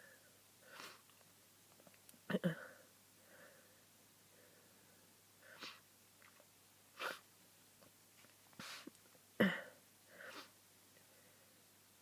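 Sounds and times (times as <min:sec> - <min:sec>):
person breathing: 0:00.0 - 0:01.1, 0:02.6 - 0:05.8, 0:09.7 - 0:11.6
person sneezing: 0:05.5 - 0:05.8, 0:07.0 - 0:07.2, 0:08.6 - 0:10.6.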